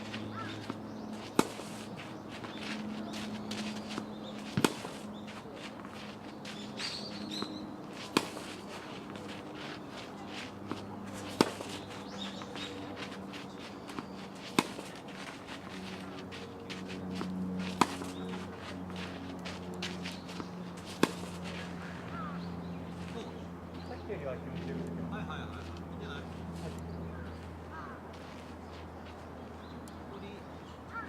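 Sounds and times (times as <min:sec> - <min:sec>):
tennis racket hitting ball: 0:00.0 - 0:16.0, 0:16.8 - 0:22.3
tennis ball bouncing: 0:00.0 - 0:22.4.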